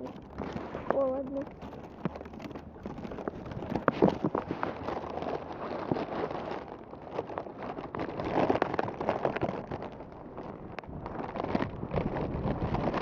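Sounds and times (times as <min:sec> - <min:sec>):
wind on microphone: 0:07.6 - 0:13.0.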